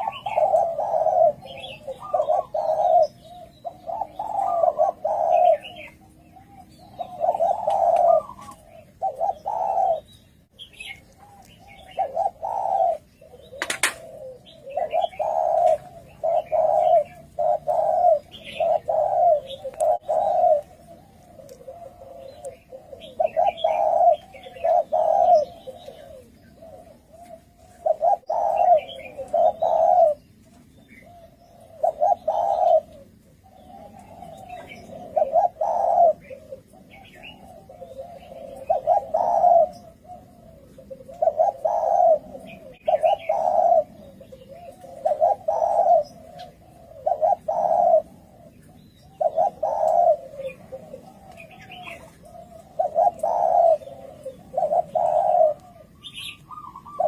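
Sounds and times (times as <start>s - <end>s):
doves cooing: 0.0s - 57.0s
small birds chirping: 0.0s - 57.0s
sharp click: 13.6s - 14.0s.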